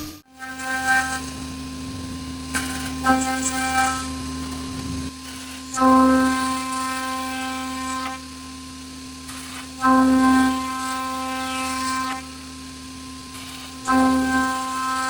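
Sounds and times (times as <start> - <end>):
router spindle cutting wood: 0.0 - 8.3, 9.2 - 12.6, 13.2 - 15.0.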